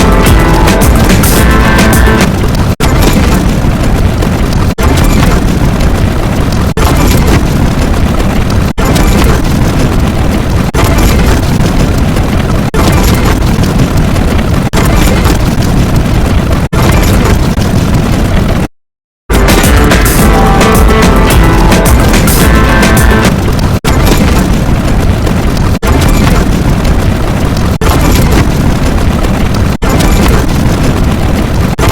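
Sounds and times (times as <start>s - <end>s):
dense layered sound effects: 0.0s - 4.1s, 19.3s - 24.0s
heavy booms: 0.0s - 18.7s, 19.3s - 31.9s.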